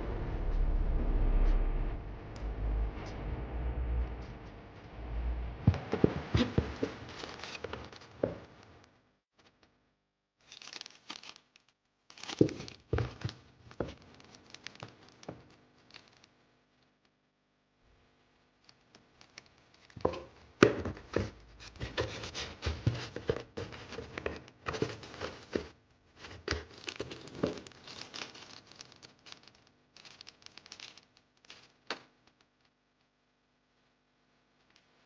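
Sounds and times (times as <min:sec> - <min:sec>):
packaging rustling and crinkling: 0:05.8 - 0:08.5, 0:10.4 - 0:16.4, 0:18.6 - 0:32.7.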